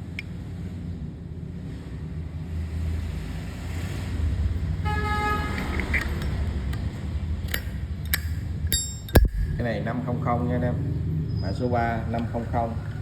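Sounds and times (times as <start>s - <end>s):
road traffic rumble: 0.0s - 13.0s
vehicle horn honking: 4.8s - 6.4s.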